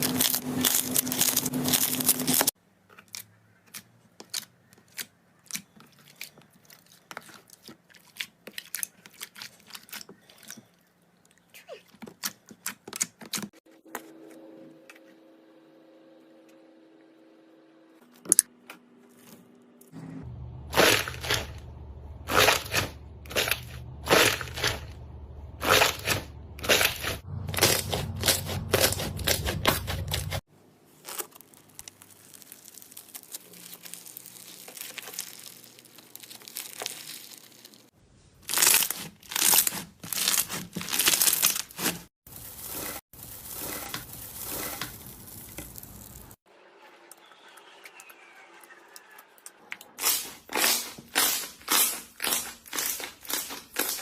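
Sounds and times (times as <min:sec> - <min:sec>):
low hum: 0:19.5 - 0:30.4.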